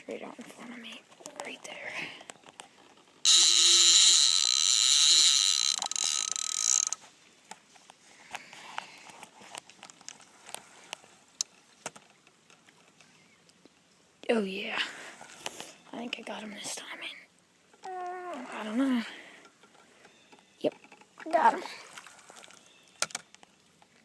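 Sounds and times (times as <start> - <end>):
fishing reel drag buzzing: 3.2 - 7.0.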